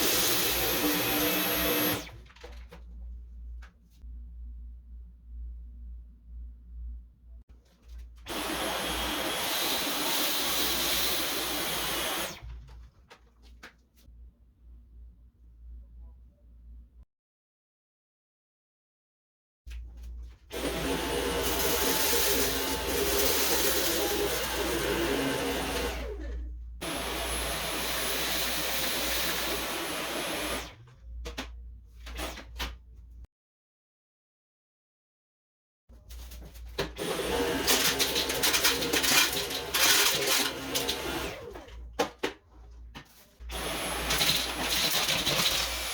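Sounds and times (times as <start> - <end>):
vacuum cleaner running: 0.0 - 2.1, 8.3 - 12.5, 20.6 - 30.8, 37.0 - 41.6, 43.5 - 45.9.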